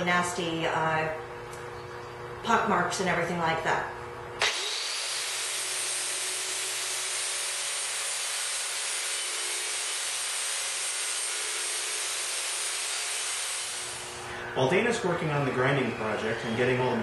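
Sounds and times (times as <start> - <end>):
angle grinder on steel: 4.4 - 14.3.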